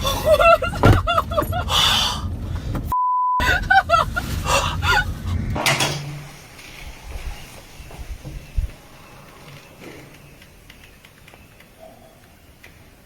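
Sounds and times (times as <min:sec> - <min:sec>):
censor bleep: 0:03.0 - 0:03.4.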